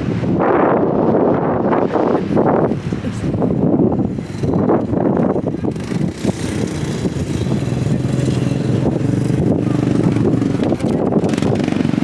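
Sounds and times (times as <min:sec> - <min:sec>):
atv engine running: 0:03.6 - 0:12.0.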